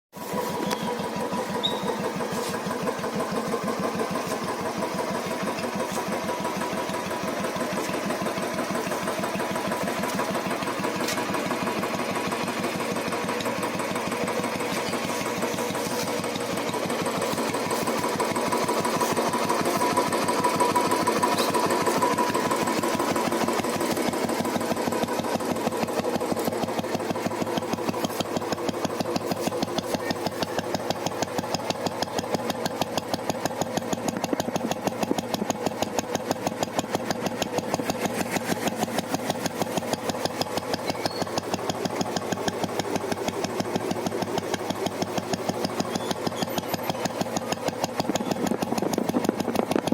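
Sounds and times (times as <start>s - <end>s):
motorcycle engine idling: 0.2s - 49.9s.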